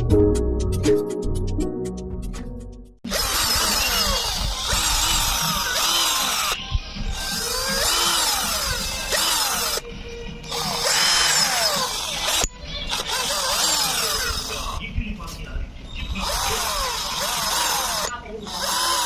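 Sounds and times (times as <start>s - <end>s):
cordless drill whirring: 3.1s - 14.8s, 16.2s - 19.0s.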